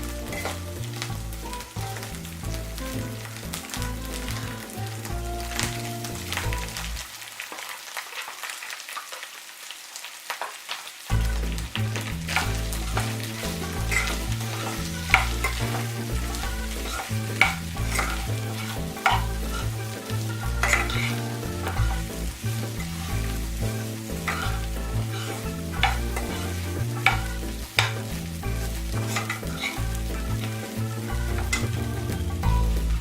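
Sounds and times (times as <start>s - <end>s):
background music with bass line: 0.0s - 7.1s, 11.1s - 33.0s
food sizzling in a pan: 0.0s - 33.0s
spatula scraping a pan: 11.1s - 32.5s.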